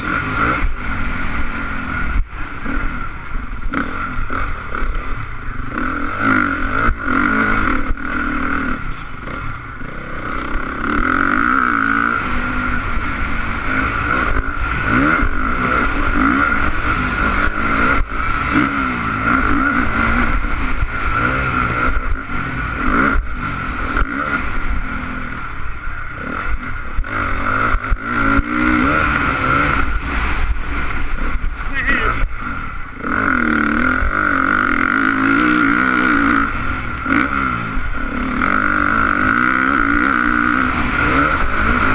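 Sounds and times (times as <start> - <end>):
motorbike engine revving: 0.0 - 41.9
wind rush: 12.2 - 22.8, 23.5 - 41.9.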